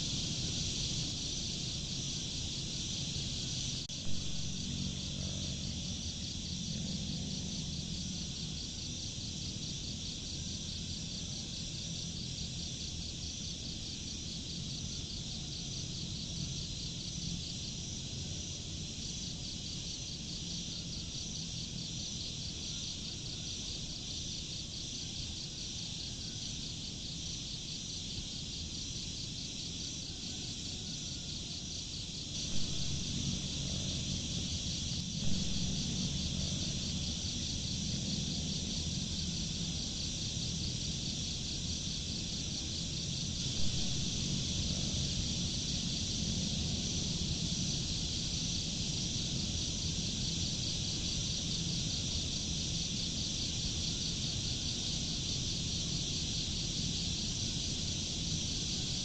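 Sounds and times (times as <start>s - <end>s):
crickets chirping: 0.0s - 59.0s
low rumble: 32.4s - 38.9s.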